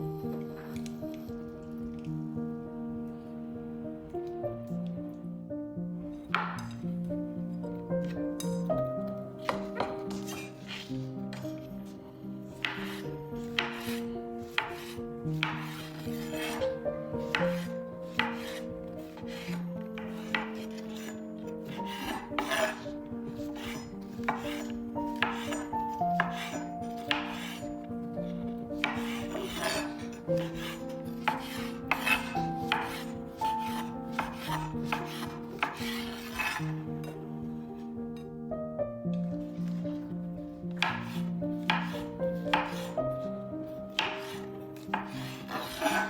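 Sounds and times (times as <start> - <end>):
soft background music: 0.0 - 46.0
kitchen utensils scraping and knocking: 6.2 - 7.0, 7.6 - 37.3, 40.7 - 46.0.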